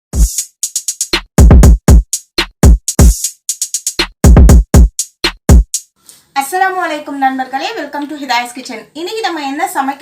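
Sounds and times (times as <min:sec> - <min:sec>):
electronic music with drum-machine beat: 0:00.1 - 0:05.9.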